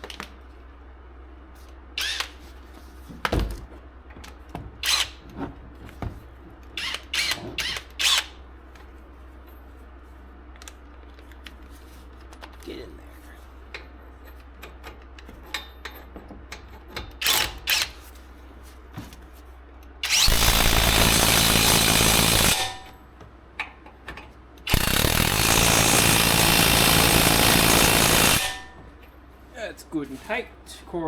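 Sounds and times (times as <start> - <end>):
impact wrench running: 20.0 - 22.9, 24.7 - 28.8.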